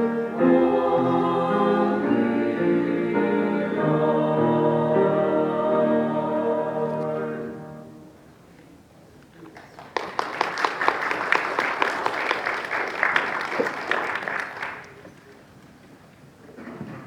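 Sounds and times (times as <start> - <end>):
choir holding chord: 0.0 - 8.2
congregation applauding: 9.5 - 15.5.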